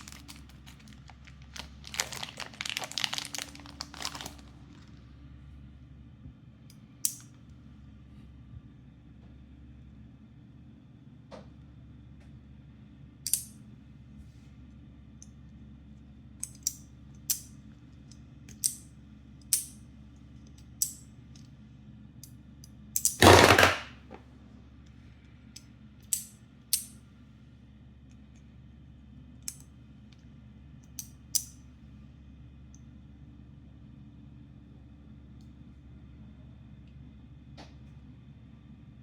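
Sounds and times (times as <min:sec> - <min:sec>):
multitool metal clicks: 0:07.0 - 0:07.3, 0:13.3 - 0:13.6, 0:23.0 - 0:23.9, 0:30.9 - 0:31.6.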